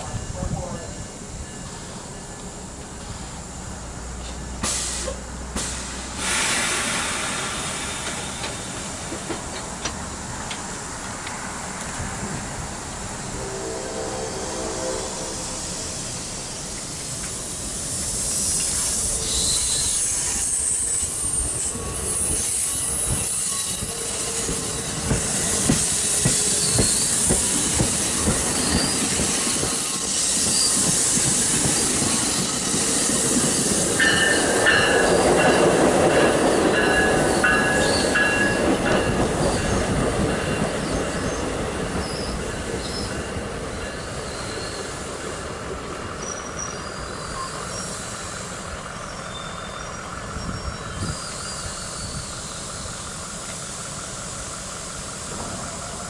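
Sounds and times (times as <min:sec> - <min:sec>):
train wheels clicking on rails: 0:01.6 - 0:13.3, 0:15.6 - 0:56.0
high wheel squeal: 0:13.4 - 0:35.7, 0:36.5 - 0:39.9, 0:42.0 - 0:45.3, 0:46.2 - 0:55.3.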